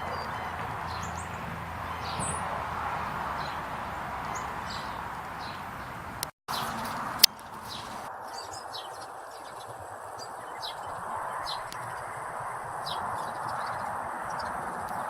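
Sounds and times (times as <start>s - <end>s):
small bird chirping: 0.0s - 2.5s, 3.4s - 15.0s.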